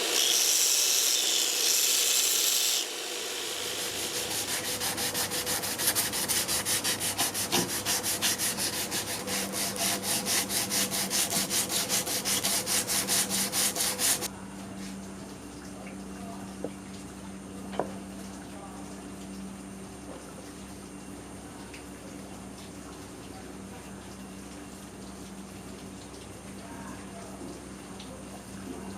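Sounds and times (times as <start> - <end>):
knife blade rubbing on abrasive: 0.0 - 14.3.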